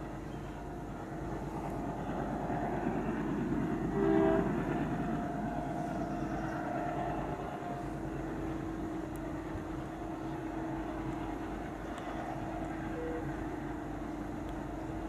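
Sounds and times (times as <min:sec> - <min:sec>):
diesel locomotive engine chugging: 0:00.0 - 0:15.0
train horn blast: 0:03.8 - 0:08.0, 0:12.7 - 0:13.6.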